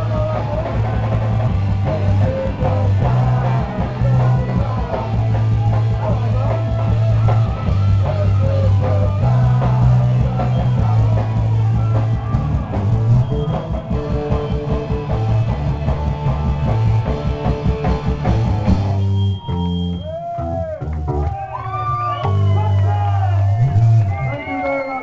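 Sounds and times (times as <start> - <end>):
bass line: 0.0 - 25.0
distorted electric guitars: 0.0 - 25.0
driving drum kit: 0.0 - 25.0.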